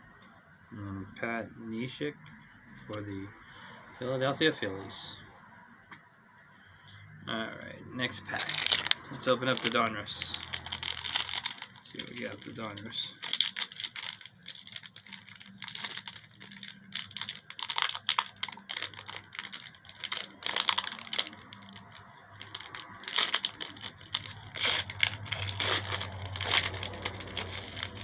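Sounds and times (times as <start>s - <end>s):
wrapper tearing and crinkling: 8.3s - 28.0s.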